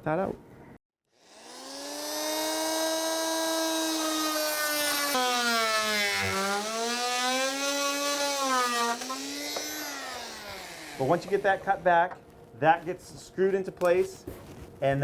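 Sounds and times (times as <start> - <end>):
oscillating multi-tool cutting wood: 1.1 - 11.8.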